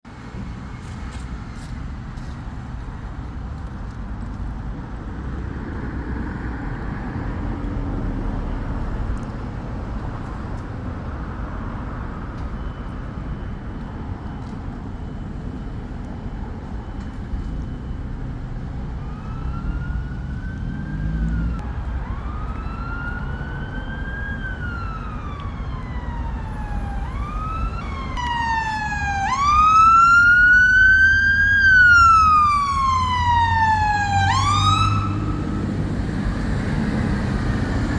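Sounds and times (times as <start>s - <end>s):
road traffic rumble: 0.0s - 37.9s
fire engine siren wailing: 12.3s - 37.9s.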